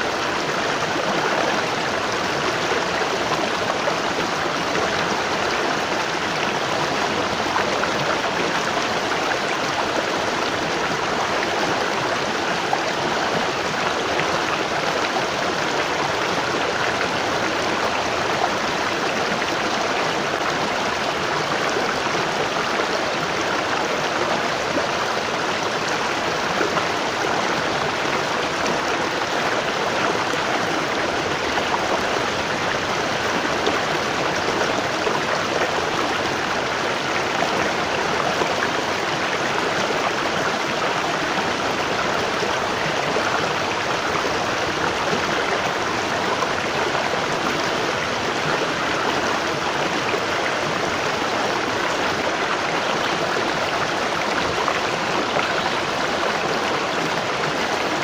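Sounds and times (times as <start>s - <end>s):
waterfall roaring: 0.0s - 58.0s.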